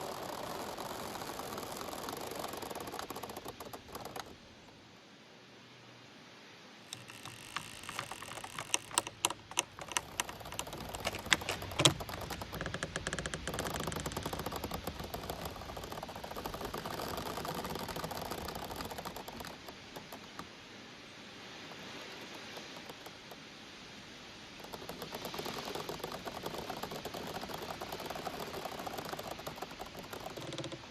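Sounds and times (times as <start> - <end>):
bamboo stems creaking in wind: 0.0 - 4.8, 6.8 - 30.9
bamboo clicks and cracks: 6.9 - 20.4.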